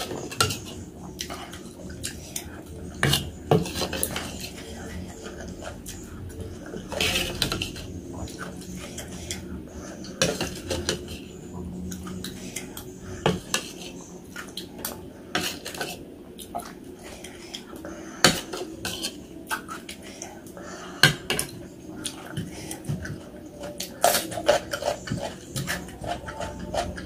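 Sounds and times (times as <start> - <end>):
cutlery clinking against a bowl: 0.0 - 4.7, 6.6 - 9.4, 10.0 - 16.8, 18.2 - 19.9, 21.0 - 27.0.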